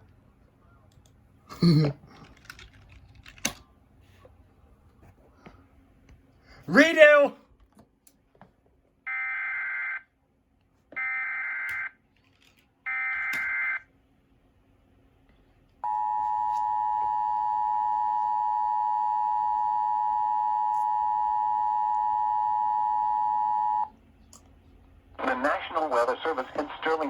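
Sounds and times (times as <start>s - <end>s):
steady two-tone attention signal: 15.8s - 23.9s.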